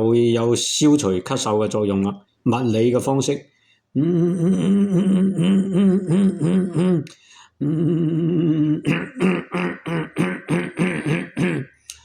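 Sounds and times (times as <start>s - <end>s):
man's rhythmic throat vocalisation: 3.9s - 12.0s.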